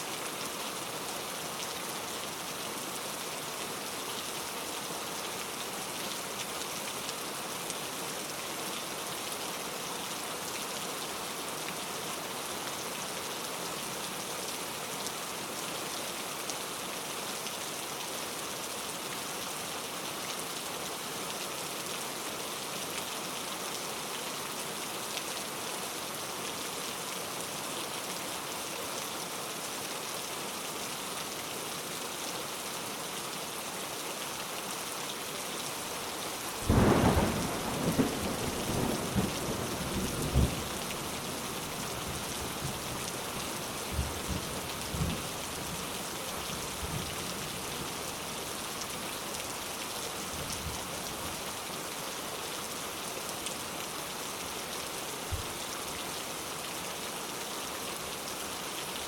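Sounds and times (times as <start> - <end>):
heavy rain hissing: 35.8 - 46.3.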